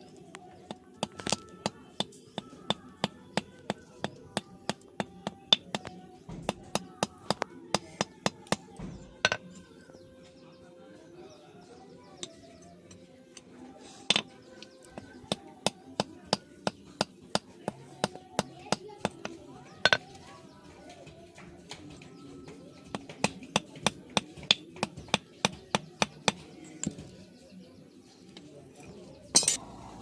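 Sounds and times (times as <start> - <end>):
hammer striking chisel on anvil: 22.9 - 27.0.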